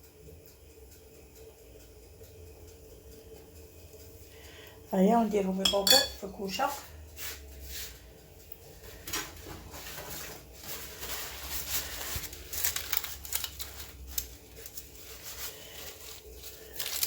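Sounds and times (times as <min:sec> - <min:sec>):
utensils clicking and scraping: 0:08.4 - 0:17.0.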